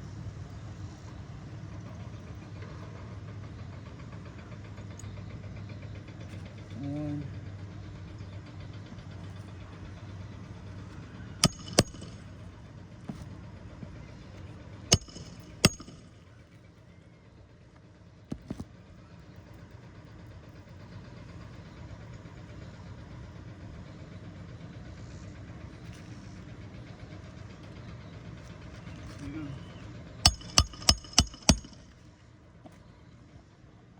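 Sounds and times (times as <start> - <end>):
low engine-like hum: 0.0 - 33.9
hammer striking nails: 11.4 - 12.3, 14.9 - 16.1, 30.3 - 31.9.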